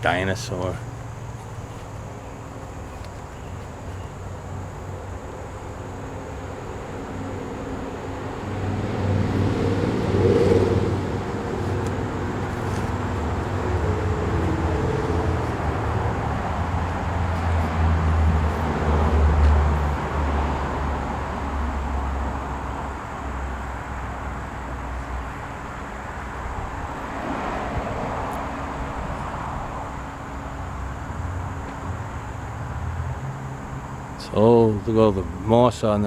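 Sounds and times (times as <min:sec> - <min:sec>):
vehicle engine running: 0:00.0 - 0:18.8.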